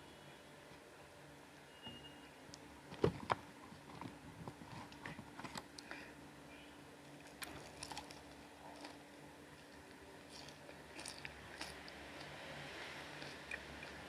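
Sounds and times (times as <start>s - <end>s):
person eating: 7.2s - 14.0s.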